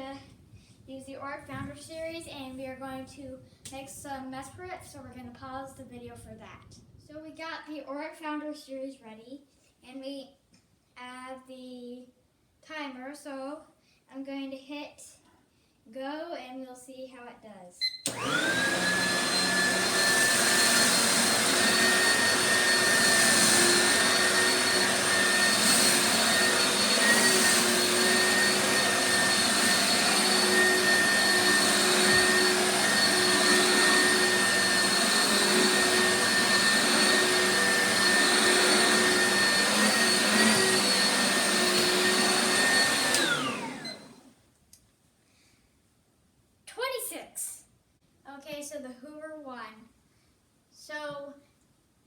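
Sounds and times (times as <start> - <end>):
vacuum cleaner motor whine: 18.0 - 44.3.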